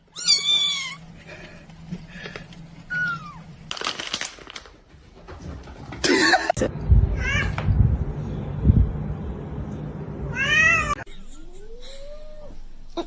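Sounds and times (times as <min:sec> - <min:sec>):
low rumble: 0:05.4 - 0:11.0.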